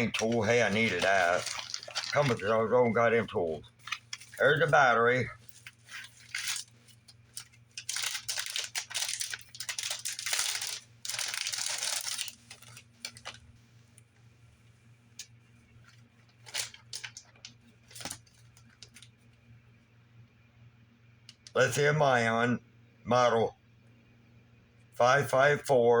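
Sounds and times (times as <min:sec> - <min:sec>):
packaging crinkling and tearing: 0:00.0 - 0:02.7, 0:03.6 - 0:04.7, 0:05.3 - 0:13.4, 0:16.0 - 0:19.1.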